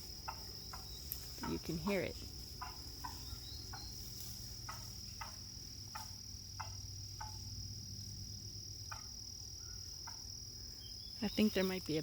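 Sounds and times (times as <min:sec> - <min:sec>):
turkey calls: 0:00.0 - 0:07.5, 0:08.8 - 0:10.3
high insect trill: 0:00.0 - 0:12.0.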